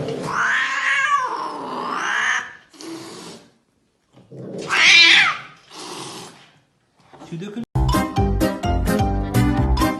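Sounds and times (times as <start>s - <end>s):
cat yowling: 0.3s - 2.6s, 4.6s - 5.6s.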